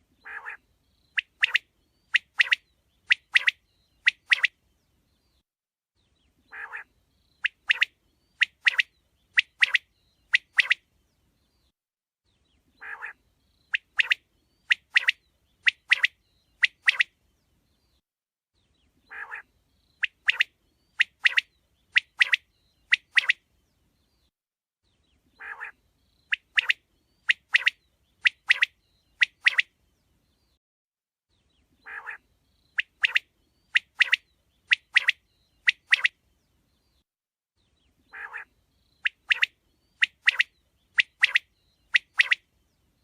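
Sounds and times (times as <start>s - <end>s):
quail calling: 0.2s - 0.6s, 6.5s - 9.8s, 12.8s - 13.2s, 19.1s - 22.4s, 25.4s - 26.7s, 31.8s - 32.2s, 38.1s - 42.4s.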